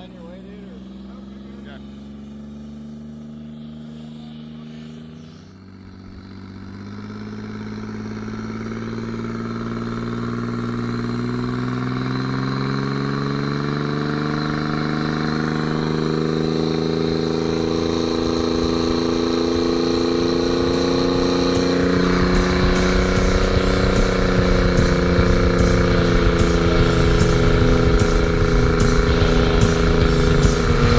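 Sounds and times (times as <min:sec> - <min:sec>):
outboard engine running: 0:00.0 - 0:30.9.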